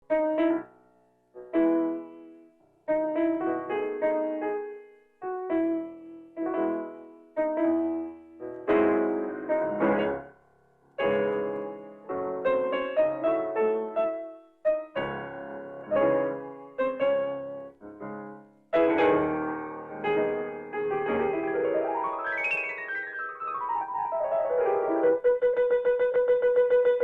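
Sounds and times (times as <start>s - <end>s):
piano playing: 0.0s - 0.8s, 1.4s - 27.0s.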